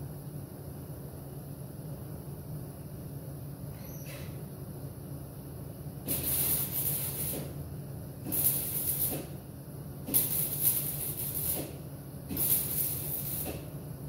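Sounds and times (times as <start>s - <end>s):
steady low hum: 0.0s - 14.0s
welding arc crackling and hissing: 6.0s - 13.8s.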